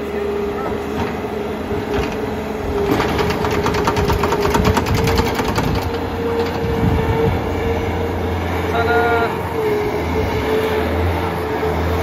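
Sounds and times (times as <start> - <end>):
loader engine whine: 0.0 - 12.0
fast rattling clatter: 2.8 - 6.0.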